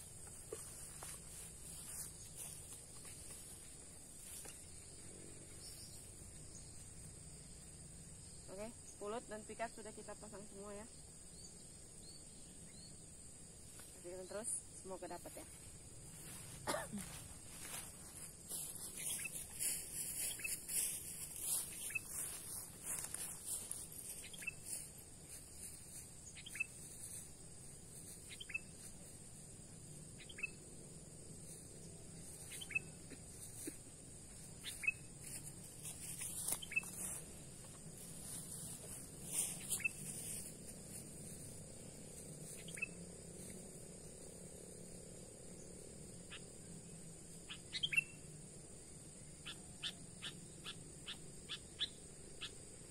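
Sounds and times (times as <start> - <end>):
high-pitched insect drone: 0.0 - 52.9
short bird chirps: 34.6 - 35.0.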